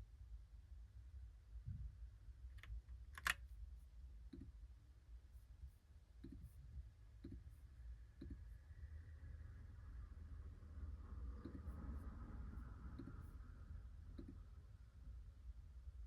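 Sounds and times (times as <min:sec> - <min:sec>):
mechanical keyboard keystrokes: 0:03.2 - 0:03.4.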